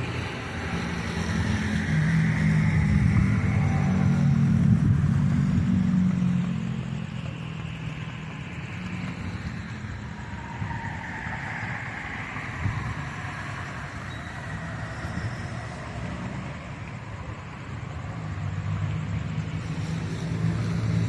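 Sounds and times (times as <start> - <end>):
steady traffic noise: 0.0 - 21.0
vehicle passing: 0.0 - 21.0.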